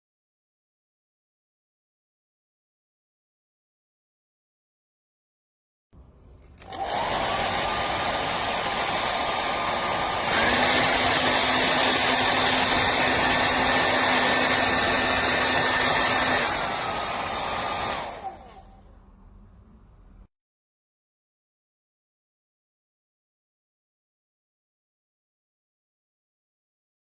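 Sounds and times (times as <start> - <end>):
hair dryer running: 6.6 - 18.8.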